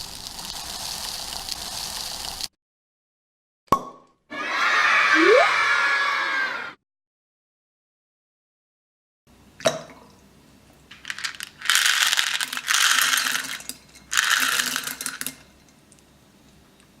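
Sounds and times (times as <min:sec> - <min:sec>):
beads pouring and rattling: 0:00.0 - 0:02.5, 0:10.9 - 0:15.3.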